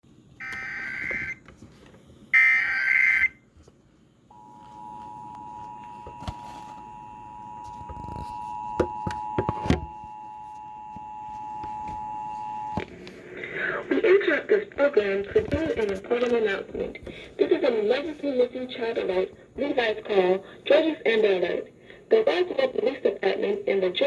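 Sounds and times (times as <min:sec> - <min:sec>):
two-tone attention signal: 0:00.4 - 0:01.4, 0:04.3 - 0:12.8.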